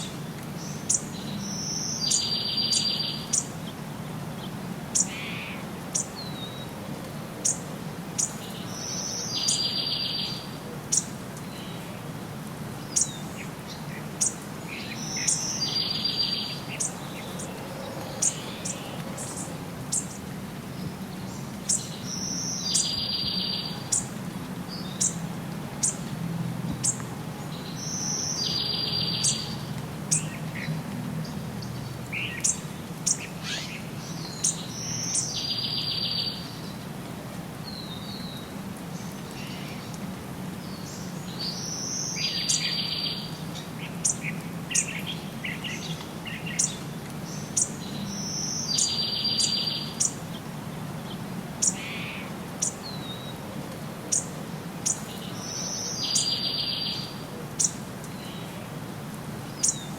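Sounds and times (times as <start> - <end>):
bird song with buzzy trill: 0.0 - 3.5, 8.2 - 11.8, 14.2 - 17.5, 21.3 - 25.2, 27.6 - 30.4, 44.0 - 50.2, 54.1 - 58.5, 59.6 - 59.9
songbirds chirping: 0.0 - 59.9.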